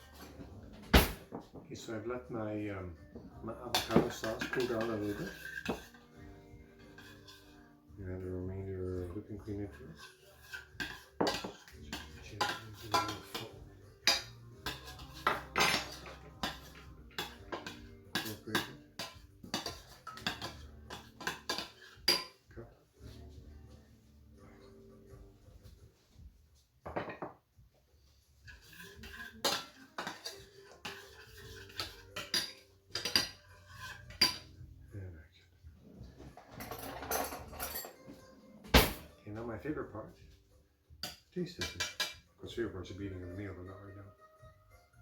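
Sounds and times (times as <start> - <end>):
utensil scraping against pot: 3.6 - 22.4, 28.3 - 34.6, 41.0 - 42.2.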